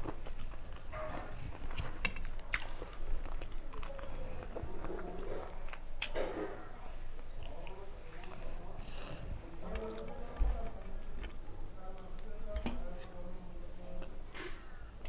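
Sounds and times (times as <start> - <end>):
person chewing: 0.0 - 11.5.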